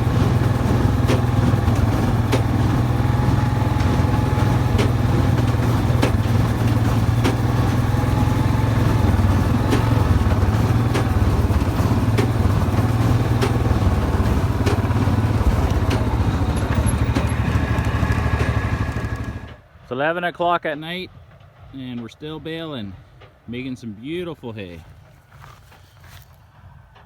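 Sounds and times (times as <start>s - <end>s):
hay baler clacking: 0.0s - 19.6s
tractor engine drone: 0.0s - 22.8s.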